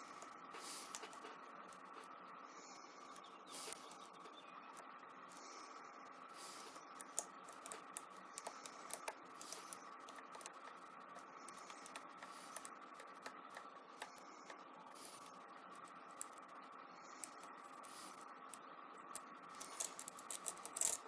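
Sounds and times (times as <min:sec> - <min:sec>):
lock pick clicking and scraping: 0:19.1 - 0:21.0.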